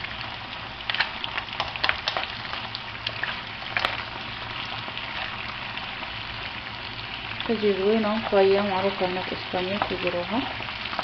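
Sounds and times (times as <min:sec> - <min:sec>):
seafood sizzling in a pan: 0:00.0 - 0:11.0
oil crackling pops: 0:00.8 - 0:05.5.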